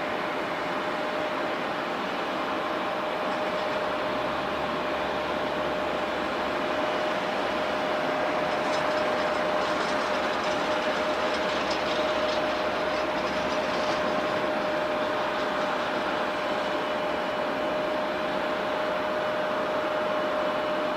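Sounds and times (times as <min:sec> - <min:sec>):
jet engines whining: 0:00.0 - 0:20.9.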